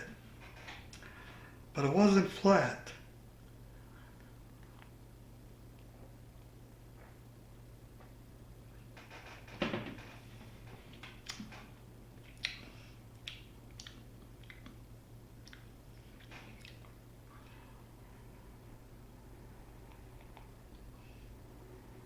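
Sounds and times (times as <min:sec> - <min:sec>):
lip smacks and mouth clicks: 0:04.2 - 0:05.0, 0:11.0 - 0:17.0.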